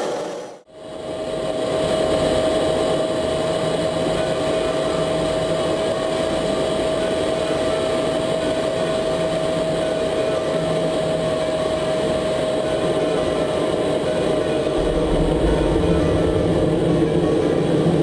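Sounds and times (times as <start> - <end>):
jet engine running: 14.8 - 18.0.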